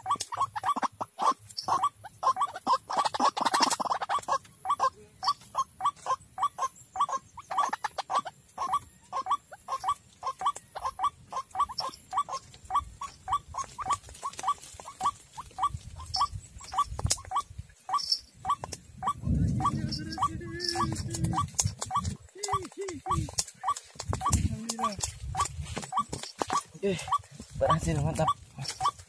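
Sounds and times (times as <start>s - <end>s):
waterhen calling repeated notes: 0.0s - 29.0s.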